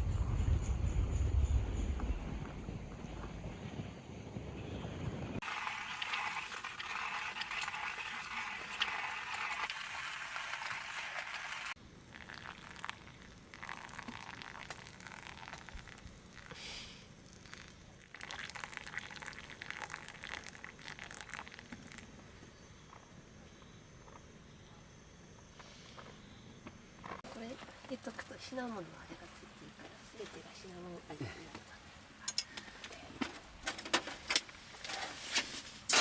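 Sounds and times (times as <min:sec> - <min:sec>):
food sizzling in a pan: 0:05.4 - 0:13.1.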